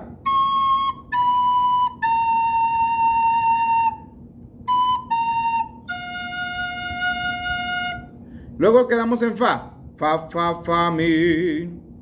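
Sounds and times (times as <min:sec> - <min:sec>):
flute playing slow notes: 0:00.2 - 0:08.2.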